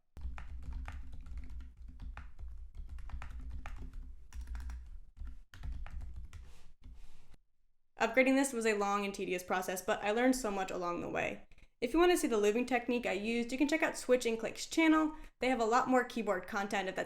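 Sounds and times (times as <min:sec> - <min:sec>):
typing on a mechanical keyboard: 0:00.2 - 0:06.5.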